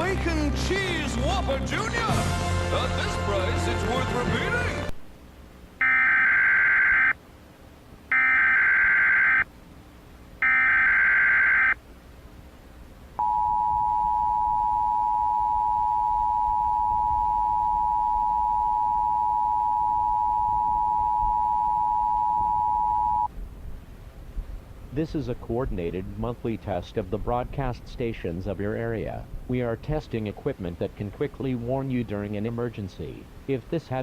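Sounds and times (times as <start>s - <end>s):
two-tone attention signal: 5.8s - 7.1s, 8.1s - 9.4s, 10.4s - 11.8s, 13.2s - 23.3s.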